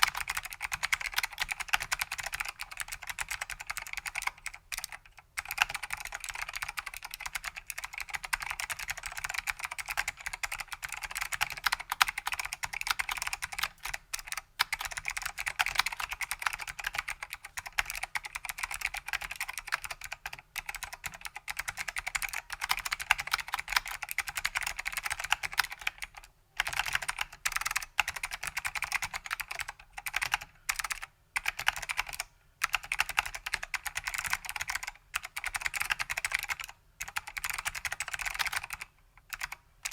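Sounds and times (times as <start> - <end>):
clicky keyboard typing: 0.0 - 39.9.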